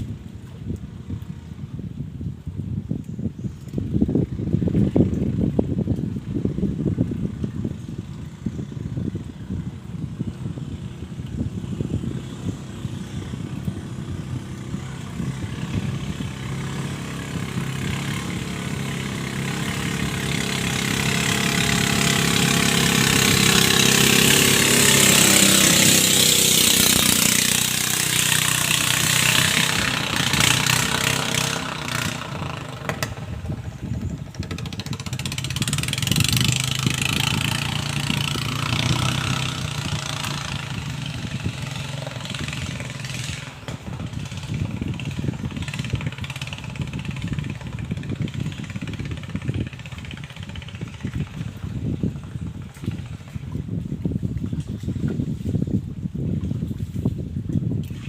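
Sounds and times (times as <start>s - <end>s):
engine sharp crackles: 3.6s - 53.8s
small engine running: 9.9s - 53.9s.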